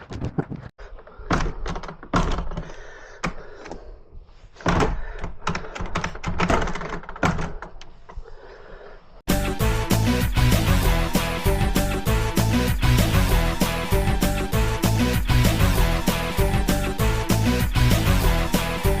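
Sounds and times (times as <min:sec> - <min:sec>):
door hardware clicks and clunks: 0:01.2 - 0:03.4, 0:04.6 - 0:07.9.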